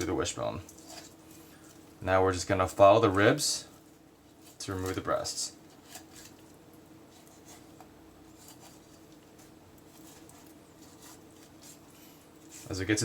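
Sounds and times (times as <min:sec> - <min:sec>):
steady low hum: 0:00.0 - 0:13.0
knife scraping along bone: 0:00.7 - 0:01.2, 0:05.7 - 0:12.7.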